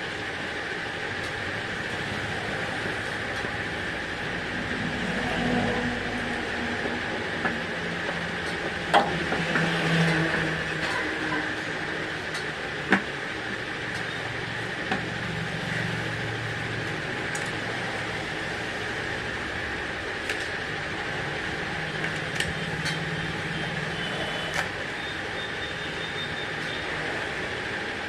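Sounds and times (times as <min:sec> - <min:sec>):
mechanical background hum: 0:00.0 - 0:28.0.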